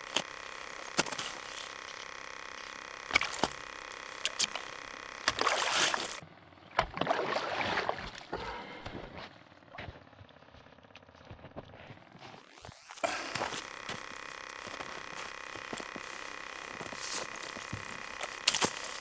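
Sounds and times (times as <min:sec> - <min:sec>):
water sloshing and splashing: 0:00.0 - 0:06.2, 0:06.8 - 0:09.1.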